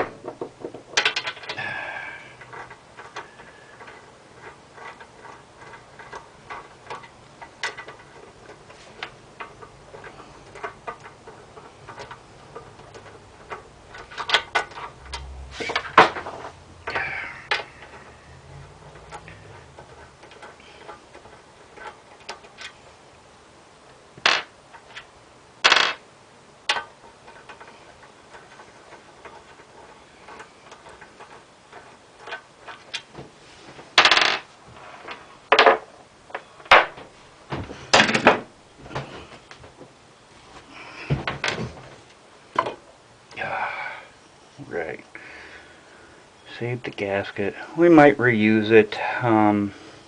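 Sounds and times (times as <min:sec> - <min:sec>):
metal parts clinking and rattling: 0:00.0 - 0:22.9, 0:26.7 - 0:33.1.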